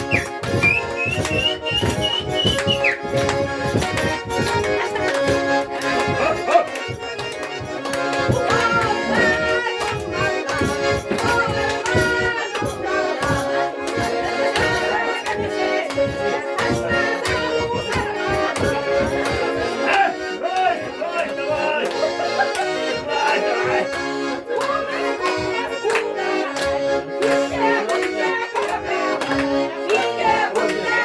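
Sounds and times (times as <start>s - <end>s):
sharp percussive beats: 0.0s - 15.0s
button accordion playing folk tune: 0.0s - 31.0s.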